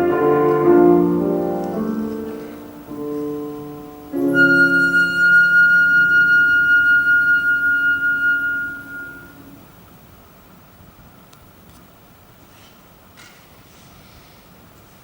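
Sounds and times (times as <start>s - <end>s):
flute note with vibrato: 0.0s - 9.6s
piano chord: 0.0s - 9.6s.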